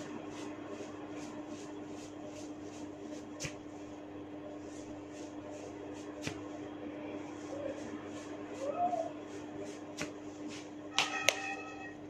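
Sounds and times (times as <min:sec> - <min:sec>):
rustling of hair strands: 0:00.0 - 0:03.9
steady low hum: 0:00.0 - 0:12.0.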